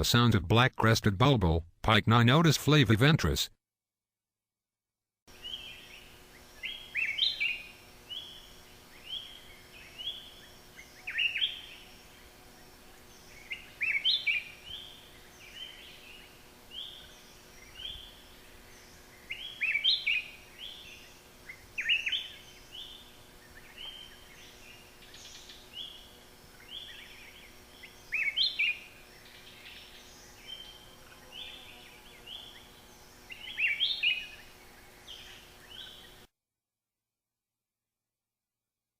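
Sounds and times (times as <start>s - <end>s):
bulbul singing: 5.4s - 36.2s.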